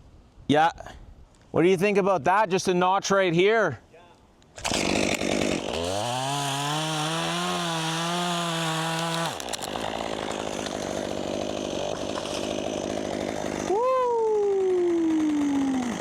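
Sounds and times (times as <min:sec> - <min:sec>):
chainsaw cutting wood: 0:04.6 - 0:13.8, 0:14.4 - 0:16.0.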